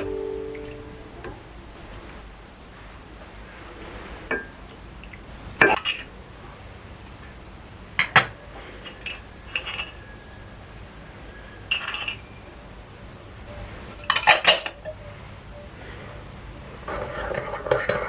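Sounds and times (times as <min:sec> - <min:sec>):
utensils clinking against dishes: 0:08.9 - 0:10.2, 0:11.7 - 0:12.3, 0:13.9 - 0:14.8.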